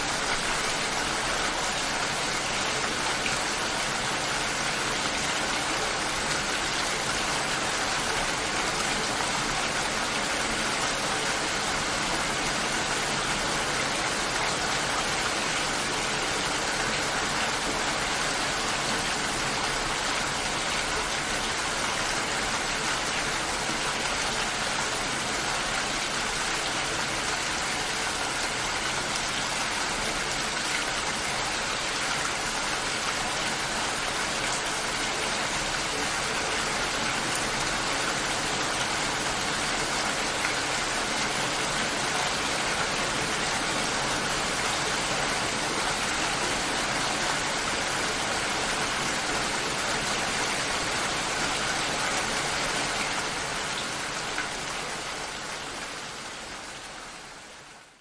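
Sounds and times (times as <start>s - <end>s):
steady rainfall: 0.0s - 58.0s.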